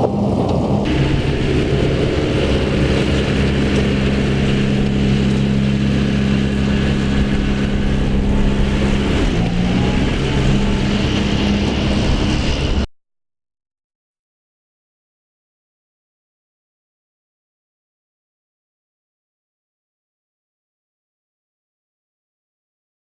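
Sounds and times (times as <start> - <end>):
tractor engine running: 0.0 - 12.9.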